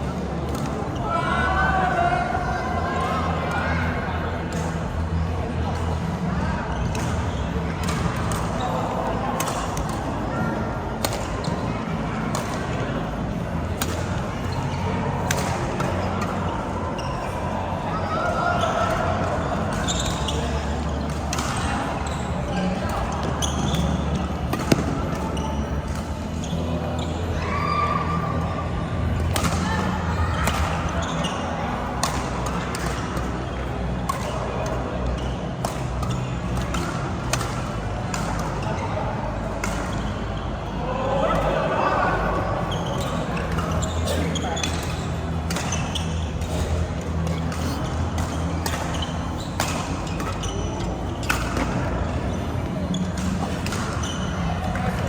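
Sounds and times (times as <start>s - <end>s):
voices in sports hall: 0.0s - 55.0s
rackets hitting shuttlecock: 9.4s - 10.0s, 11.0s - 11.6s, 12.3s - 12.8s, 22.9s - 25.2s, 29.3s - 29.6s, 32.0s - 33.4s, 35.6s - 38.6s, 39.5s - 40.1s, 43.5s - 52.1s, 53.2s - 55.0s
rackets striking shuttlecock: 22.9s - 25.2s, 39.6s - 40.1s, 44.6s - 50.6s.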